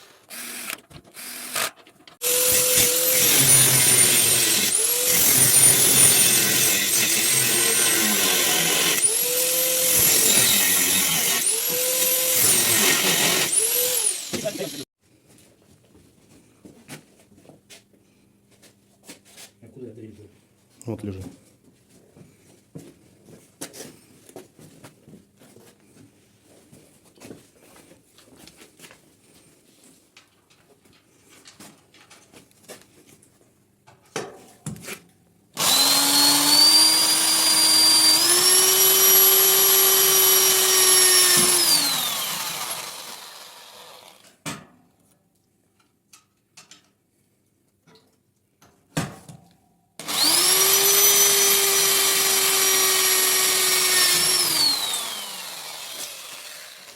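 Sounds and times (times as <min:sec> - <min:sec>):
high-speed electric motor whine: 0:35.6 - 0:44.2, 0:50.0 - 0:56.9.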